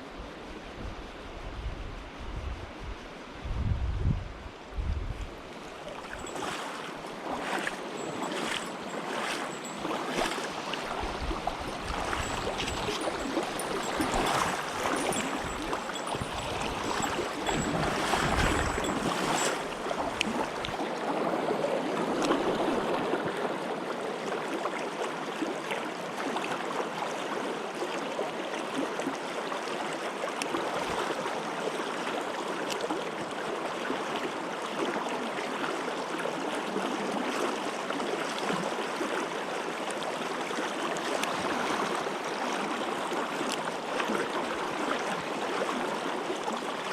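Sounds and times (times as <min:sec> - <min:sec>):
stream rushing over rocks: 0:05.6 - 0:21.0, 0:38.1 - 0:46.9.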